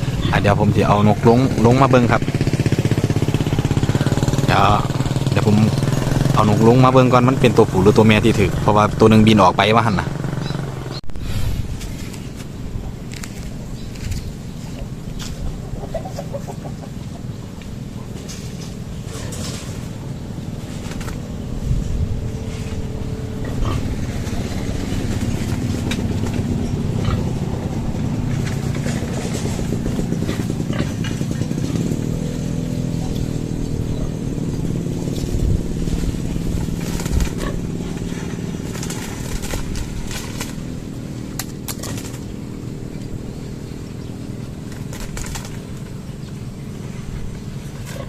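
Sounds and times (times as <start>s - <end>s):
small motorcycle engine running: 0.0s - 48.0s.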